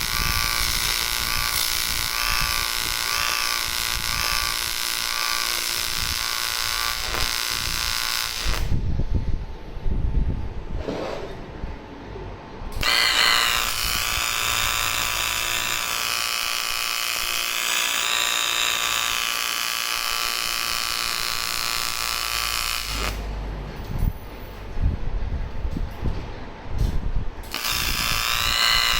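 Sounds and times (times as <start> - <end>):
welding arc buzzing: 0.0 - 8.8, 12.8 - 23.4, 27.4 - 28.9.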